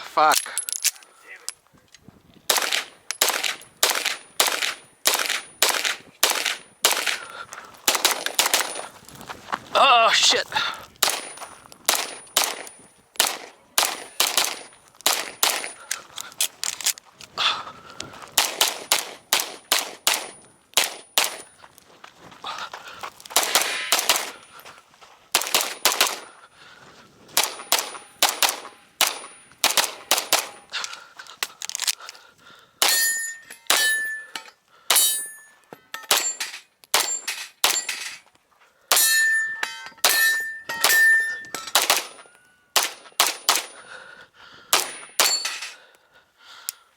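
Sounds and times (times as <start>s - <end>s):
pistol shots: 2.5s - 7.2s, 7.9s - 8.8s, 11.0s - 15.8s, 18.4s - 21.5s, 23.4s - 24.4s, 25.4s - 26.3s, 27.4s - 30.6s, 36.1s - 38.0s, 40.0s - 43.8s
metallic rings: 32.9s - 38.3s, 38.9s - 42.8s, 45.0s - 45.8s.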